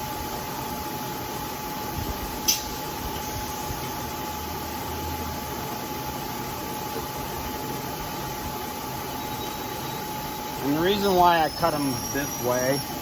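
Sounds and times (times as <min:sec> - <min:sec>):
milling machine running: 0:06.5 - 0:13.0.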